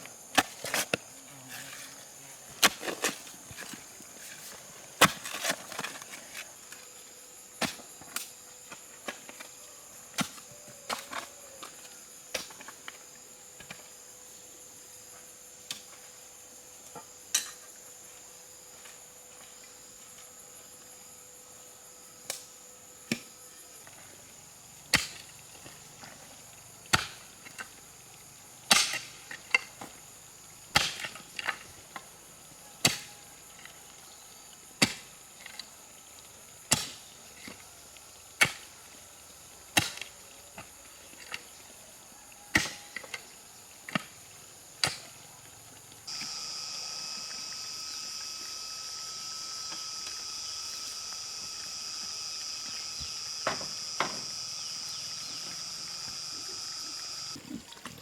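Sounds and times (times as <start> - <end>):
insects buzzing: 0.0 - 42.0, 43.2 - 58.0
hand tool chopping: 49.3 - 56.5.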